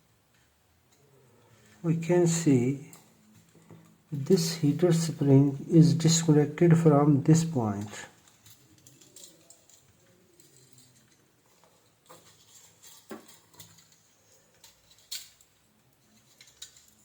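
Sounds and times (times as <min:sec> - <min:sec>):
plastic parts clicking: 0:08.2 - 0:17.0.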